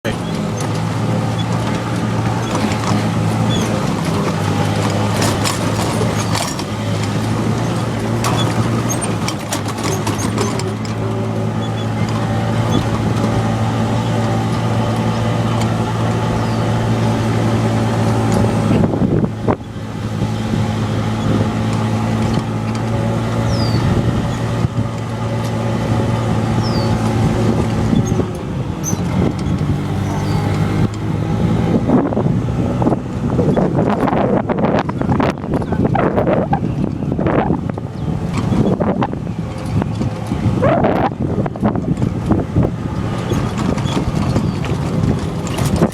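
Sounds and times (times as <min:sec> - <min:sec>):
knocks and rattles: 0:00.0 - 0:16.4, 0:33.9 - 0:45.9
golf cart motor humming: 0:00.0 - 0:45.9.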